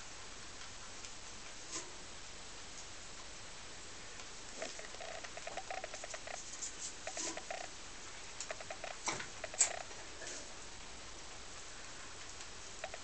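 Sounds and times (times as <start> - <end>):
rabbits crunching hay: 4.5 - 10.6.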